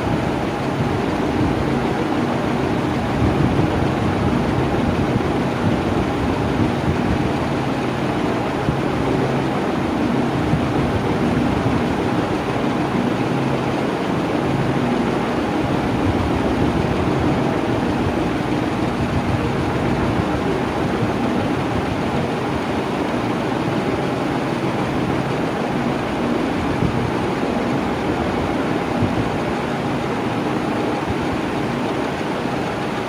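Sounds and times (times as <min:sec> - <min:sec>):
electric fan running: 0:00.0 - 0:33.0.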